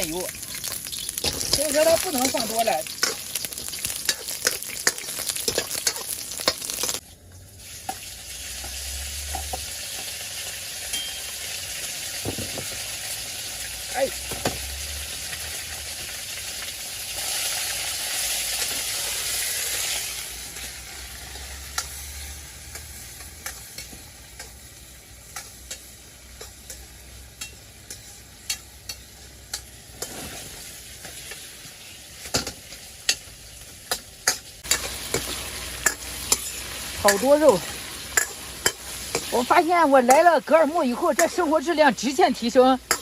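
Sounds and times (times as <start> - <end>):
meat sizzling in a pan: 0.0 - 43.0
spatula scraping and tapping pan: 3.8 - 7.0, 38.1 - 39.4.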